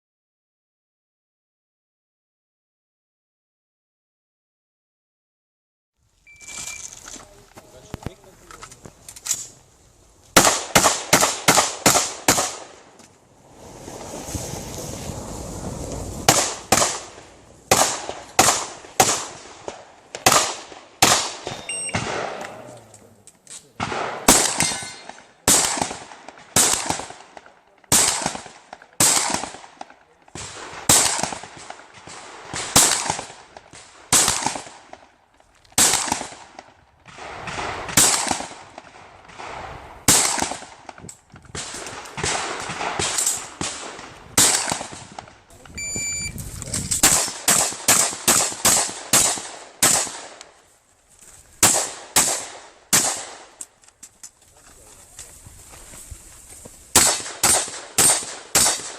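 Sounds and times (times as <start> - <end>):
shotgun shots echoing: 10.4 - 12.9, 16.3 - 22.8, 23.8 - 35.1, 35.8 - 45.3, 47.0 - 50.4, 51.6 - 53.6, 56.9 - 58.9.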